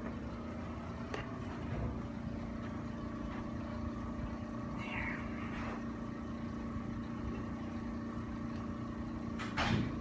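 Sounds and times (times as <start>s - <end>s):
steady mechanical hum: 0.0s - 10.0s.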